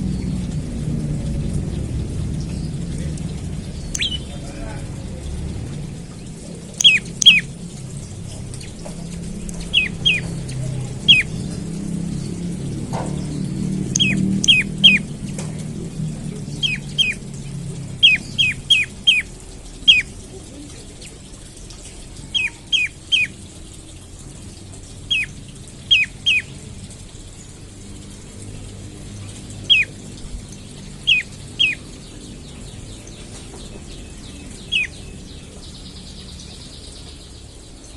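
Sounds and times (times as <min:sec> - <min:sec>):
bird calling sharp falling notes: 0:03.9 - 0:04.6, 0:06.8 - 0:07.6, 0:25.0 - 0:26.5.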